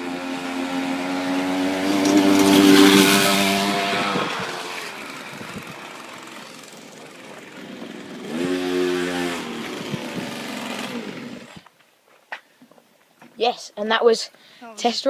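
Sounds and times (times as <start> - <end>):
small petrol engine revving: 0.0 - 11.7.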